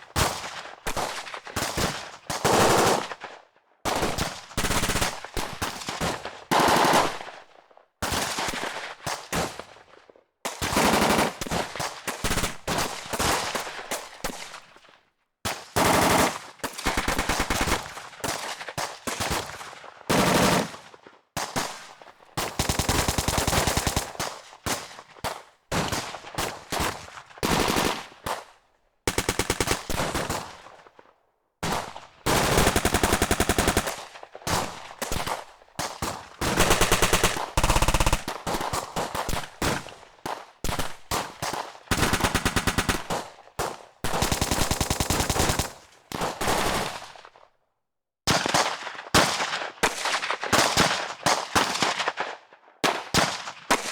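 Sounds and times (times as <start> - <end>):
machine-gun fire in bursts: 0.1 - 14.8, 15.5 - 31.0, 31.6 - 47.4, 48.3 - 53.9.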